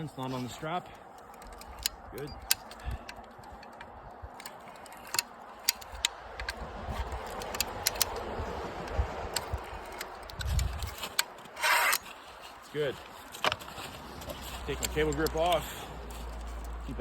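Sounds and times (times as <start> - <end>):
metal clicks and rattles: 1.1 - 12.1, 14.2 - 16.9
rustling scrape: 9.8 - 16.9.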